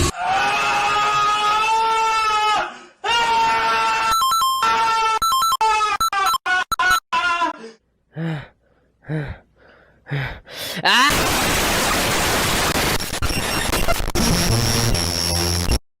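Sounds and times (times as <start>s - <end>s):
groaning gasps: 7.6s - 11.0s
hissing static: 11.1s - 15.8s.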